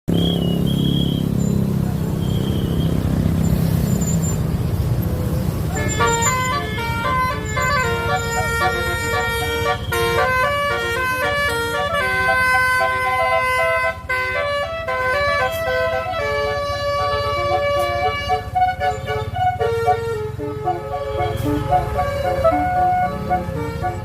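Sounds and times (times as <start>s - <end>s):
low rumble of bus: 0.1s - 24.0s
multi-tone air horn melody: 5.6s - 24.0s.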